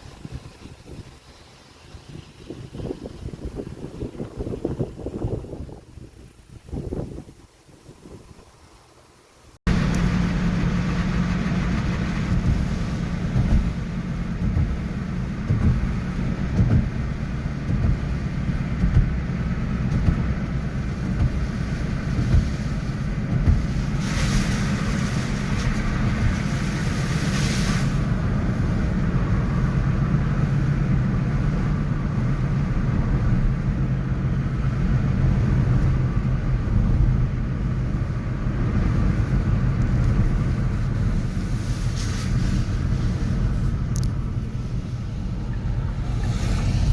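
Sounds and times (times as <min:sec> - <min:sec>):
traffic rumble: 0:00.0 - 0:46.9
hiss: 0:20.7 - 0:28.1, 0:40.5 - 0:43.8, 0:46.0 - 0:46.9.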